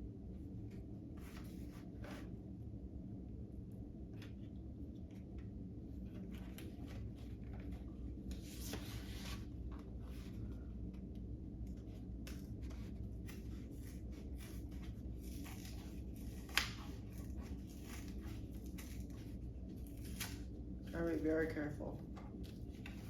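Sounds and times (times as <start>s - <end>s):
steady low hum: 0.0s - 23.0s.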